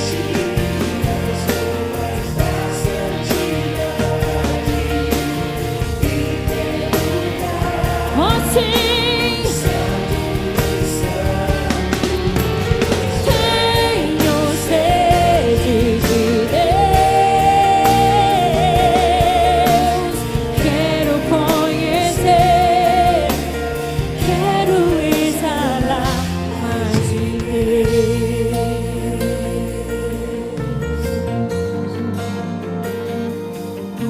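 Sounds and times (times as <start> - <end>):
backing voices: 0.0 - 32.3
full band playing: 0.0 - 34.0
woman singing with vibrato: 7.8 - 10.0, 13.2 - 23.6, 24.2 - 30.8.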